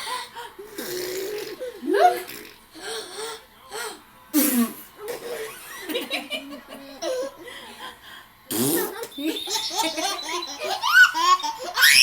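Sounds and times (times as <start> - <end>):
children laughing: 5.1 - 8.0, 9.1 - 12.0.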